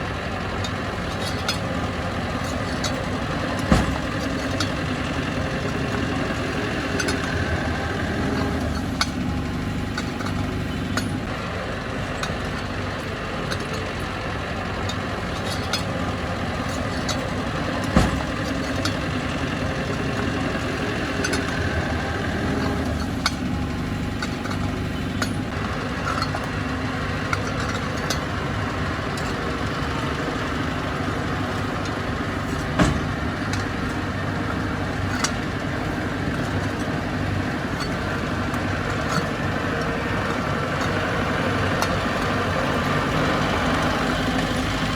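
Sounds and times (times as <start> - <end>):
heavy diesel machinery running: 0.0 - 44.9
metal clanks: 0.0 - 44.9
loud knocks: 3.6 - 5.6.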